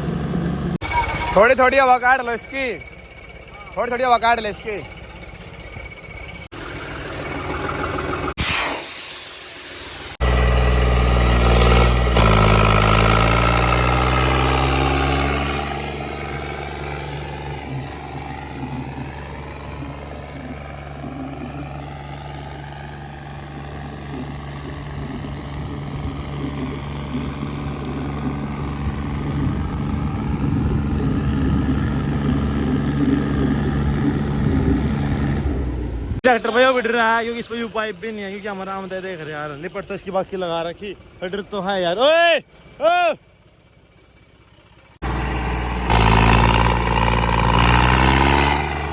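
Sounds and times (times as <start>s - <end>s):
tractor diesel engine revving: 0.0s - 48.9s
loud hiss: 8.4s - 10.2s.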